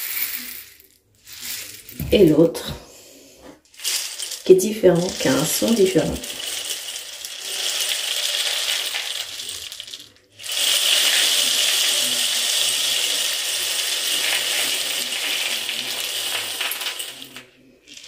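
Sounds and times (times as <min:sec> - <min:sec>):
rain stick grains pattering: 0:00.0 - 0:02.4, 0:03.7 - 0:18.0.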